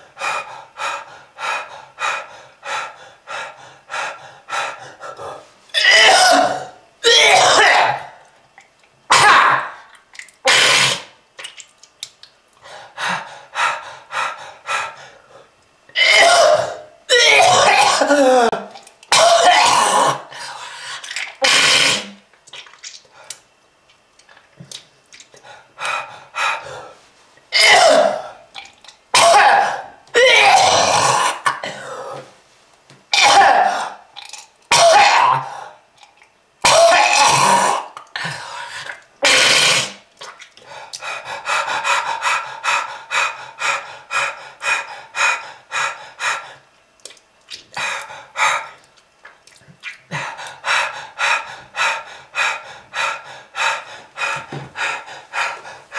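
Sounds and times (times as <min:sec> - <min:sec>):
person coughing: 0:05.8 - 0:08.1, 0:16.0 - 0:20.3, 0:27.6 - 0:28.3, 0:29.2 - 0:32.2, 0:34.7 - 0:35.5.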